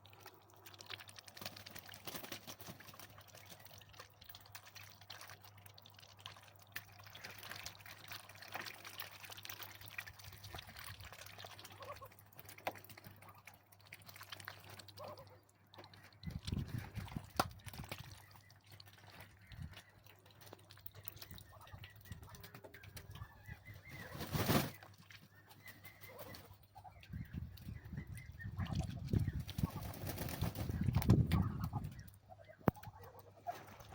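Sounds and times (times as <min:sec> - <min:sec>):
water pouring and splashing: 0:00.0 - 0:33.9
bird sounds: 0:17.8 - 0:33.9.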